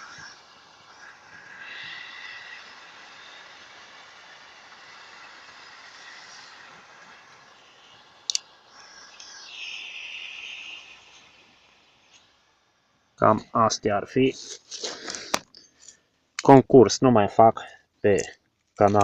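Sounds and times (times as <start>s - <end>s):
torch lighter hissing: 0.0s - 13.4s, 14.3s - 16.6s.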